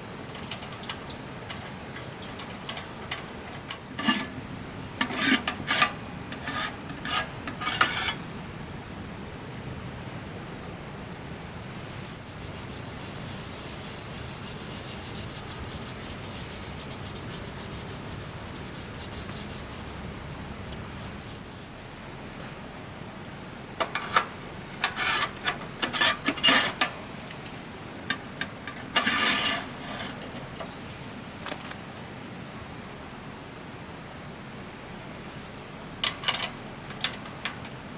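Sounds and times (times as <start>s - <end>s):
scraping rasping rub: 5.0s - 8.2s, 12.0s - 22.0s, 24.0s - 26.8s, 28.8s - 30.5s.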